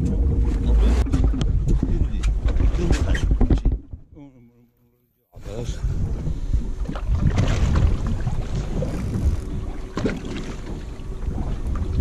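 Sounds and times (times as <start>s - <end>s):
wind buffeting microphone: 0.0s - 4.2s, 5.4s - 12.0s
knocks on boat: 1.2s - 4.0s, 8.6s - 10.6s.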